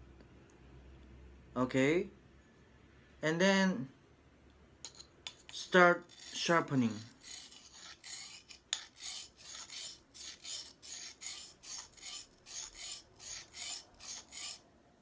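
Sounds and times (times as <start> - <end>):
blade rasping on sharpening stone: 4.9 - 14.7.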